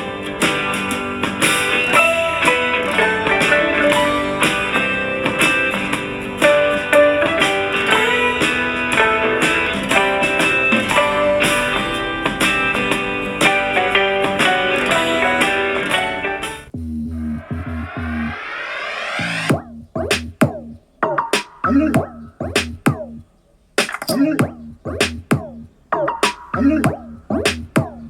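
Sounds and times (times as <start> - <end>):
country folk song with guitar: 0.0 - 16.6.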